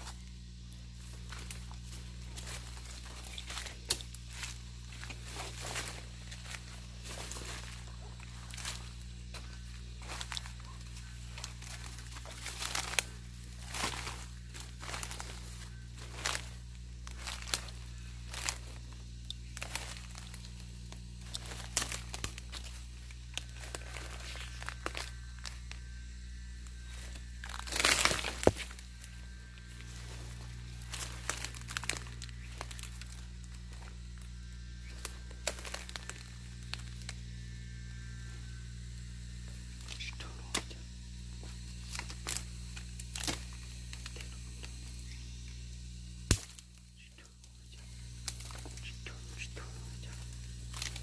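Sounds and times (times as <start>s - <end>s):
dry rustling and crinkling: 0.0s - 25.8s, 26.7s - 37.3s, 41.3s - 45.2s, 46.3s - 51.0s
steady low hum: 0.0s - 51.0s
sharp crack: 46.3s - 46.6s
sharp snap: 46.3s - 46.6s.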